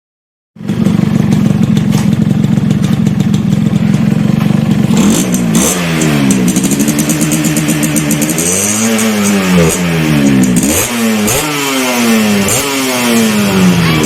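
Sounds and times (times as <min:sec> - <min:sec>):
motorcycle engine revving: 0:00.6 - 0:14.0.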